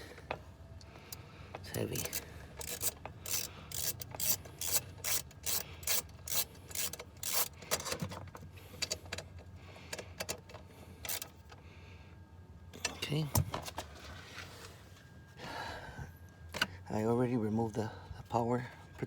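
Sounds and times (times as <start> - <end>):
ratchet wrench clicking: 1.7 - 7.8, 11.0 - 11.3.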